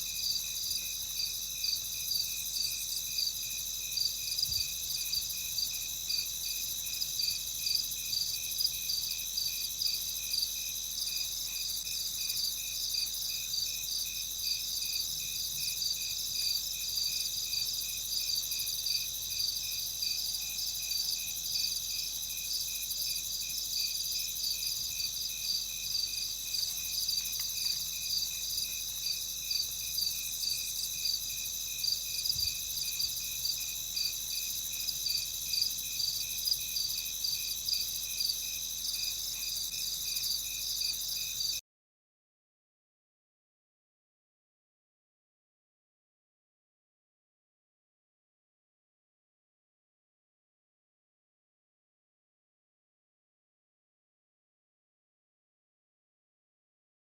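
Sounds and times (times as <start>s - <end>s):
crickets chirping: 0.0s - 41.6s.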